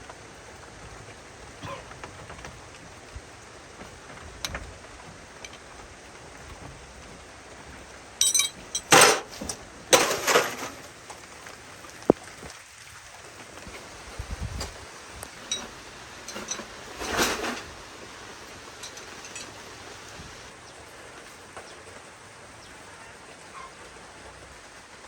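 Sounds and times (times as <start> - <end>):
steady rain hiss: 0.0 - 25.0
sharp clinks: 8.2 - 10.9, 15.4 - 20.5
loud clattering: 8.2 - 11.0, 15.3 - 20.5.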